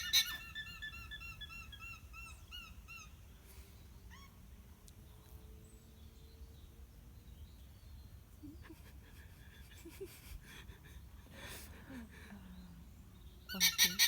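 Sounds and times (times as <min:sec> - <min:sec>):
alpaca alarm calls: 0:00.0 - 0:00.8, 0:13.5 - 0:14.0.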